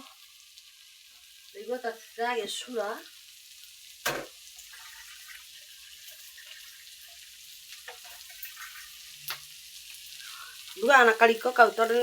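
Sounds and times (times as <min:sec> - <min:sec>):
food sizzling in a pan: 0:00.0 - 0:12.0.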